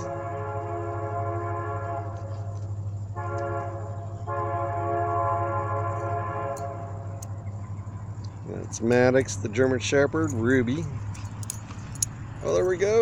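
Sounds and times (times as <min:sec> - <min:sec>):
train horn blasts: 0:00.0 - 0:07.2.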